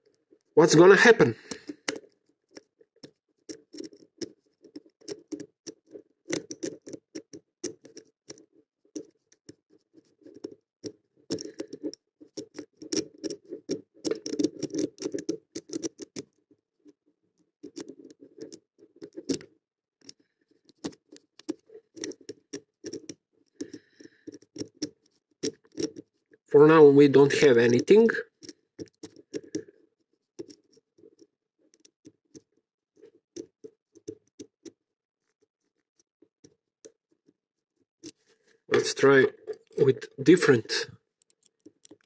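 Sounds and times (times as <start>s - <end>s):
lock pick clicking and scraping: 1.4s - 16.4s, 17.6s - 26.4s, 28.3s - 34.8s, 38.0s - 40.1s, 41.2s - 42.0s.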